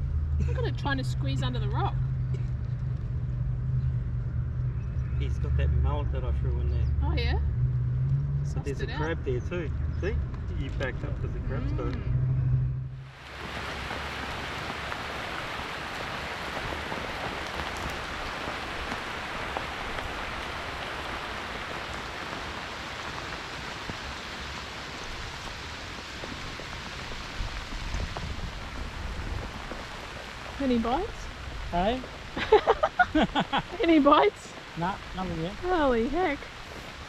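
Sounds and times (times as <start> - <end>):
heavy rain falling: 13.0 - 37.0.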